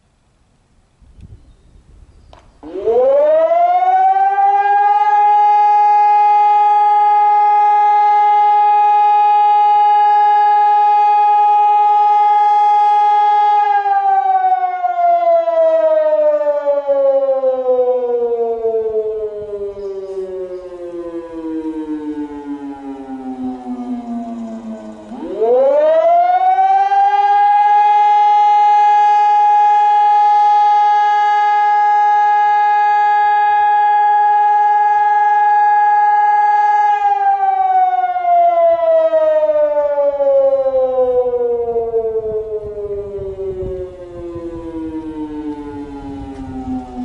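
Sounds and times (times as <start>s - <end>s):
civil defence siren: 2.3s - 47.0s.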